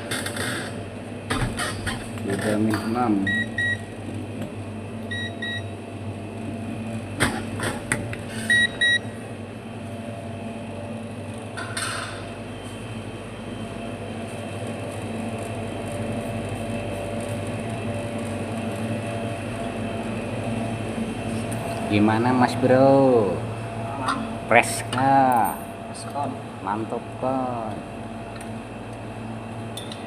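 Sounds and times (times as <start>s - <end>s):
refrigerator compressor humming: 0.0s - 30.0s
paired electronic beeps: 8.4s - 9.0s.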